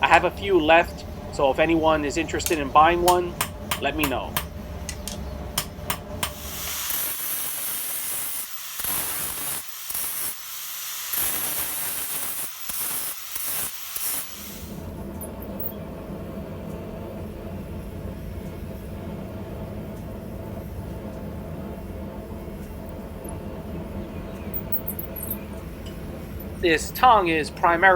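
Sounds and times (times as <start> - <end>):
steady low hum: 0.0 - 6.7, 14.7 - 27.9
hot steel hissing in water: 6.2 - 14.9.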